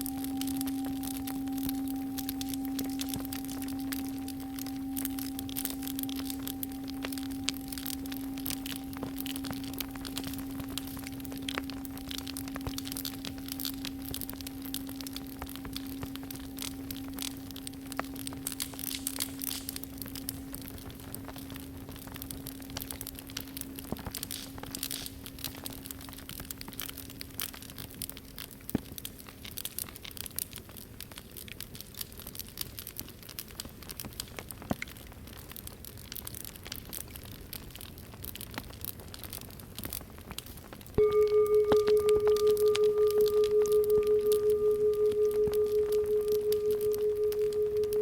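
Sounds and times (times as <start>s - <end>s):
singing bowl ringing: 0.0s - 24.9s, 41.0s - 48.0s
wood fire crackling and popping: 0.0s - 48.0s.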